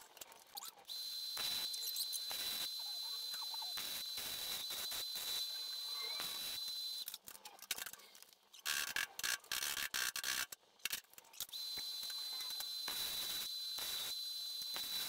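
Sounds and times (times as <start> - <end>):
welding hiss: 1.1 - 7.0, 11.6 - 15.0.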